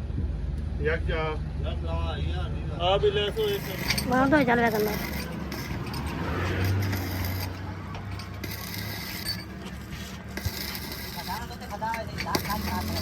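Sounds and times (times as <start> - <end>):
metal clinks: 3.3 - 13.0.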